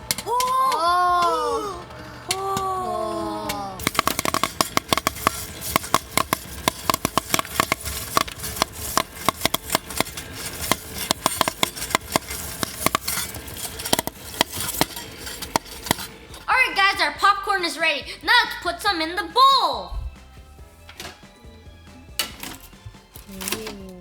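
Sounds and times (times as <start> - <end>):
popcorn popping: 0.0 - 19.0, 20.2 - 24.0.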